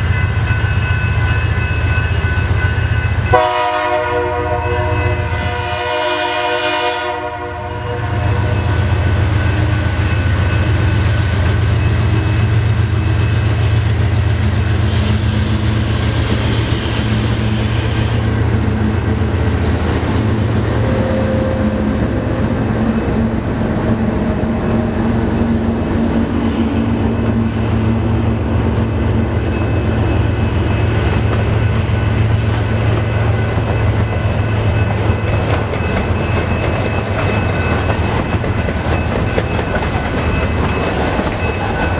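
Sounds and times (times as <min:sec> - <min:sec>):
diesel locomotive droning: 0:00.0 - 0:41.9
train wheels clicking on rails: 0:10.0 - 0:20.7, 0:23.0 - 0:41.9
high hiss: 0:14.9 - 0:18.4.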